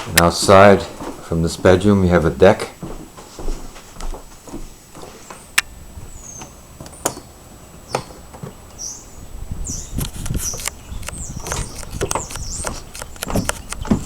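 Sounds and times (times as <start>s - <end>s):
high bird chirps: 5.2s - 14.0s
sharp clicks and knocks: 10.0s - 14.0s.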